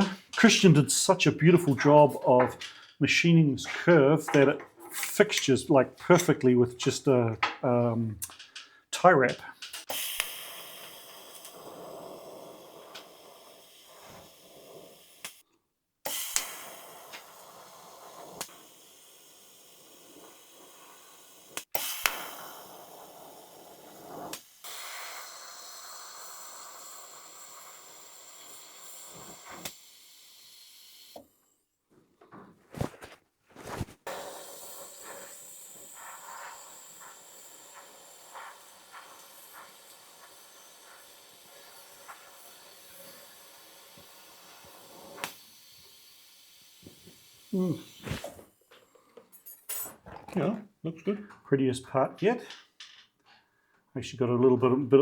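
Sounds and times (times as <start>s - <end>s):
arc welding hiss: 9.6s - 15.4s, 16.1s - 31.2s, 34.0s - 48.4s.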